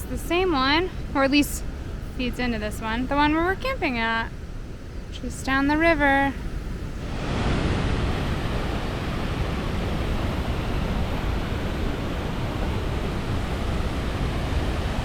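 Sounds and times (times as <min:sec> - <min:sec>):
river water rushing: 0:06.4 - 0:15.0.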